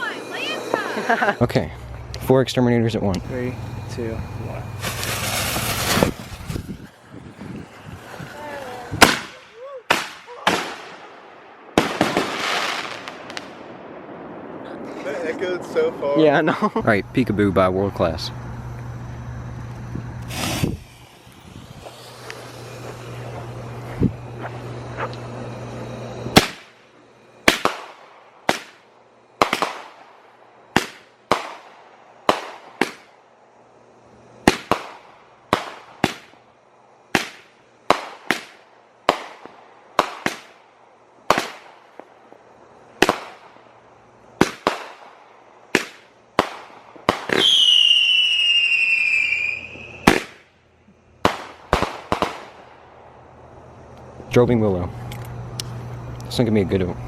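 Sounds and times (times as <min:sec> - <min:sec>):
high firework whistle: 0:00.0 - 0:01.9, 0:03.2 - 0:10.8, 0:19.4 - 0:26.8, 0:47.1 - 0:50.4
firework bangs: 0:00.0 - 0:02.0, 0:03.3 - 0:16.8, 0:18.4 - 0:33.2, 0:34.4 - 0:36.4, 0:37.1 - 0:42.2, 0:43.0 - 0:43.7, 0:44.4 - 0:50.6, 0:51.2 - 0:52.9.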